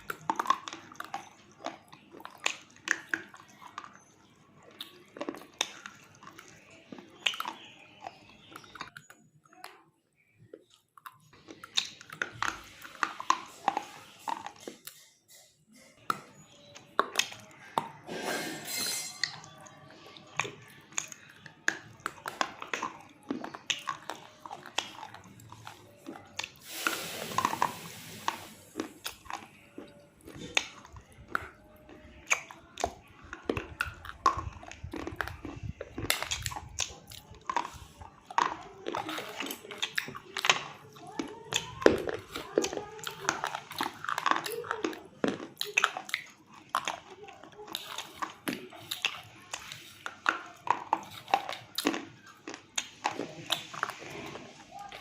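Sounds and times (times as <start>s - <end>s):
chewing hard mineral pieces: 0.0s - 55.0s.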